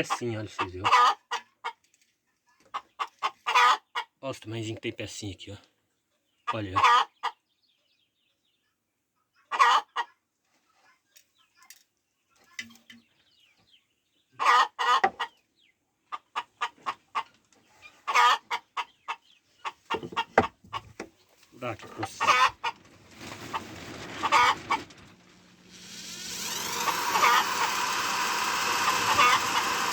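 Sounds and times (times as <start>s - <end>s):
chickens clucking: 0.0s - 1.9s, 2.6s - 5.0s, 6.5s - 7.4s, 9.4s - 10.2s, 14.4s - 25.8s.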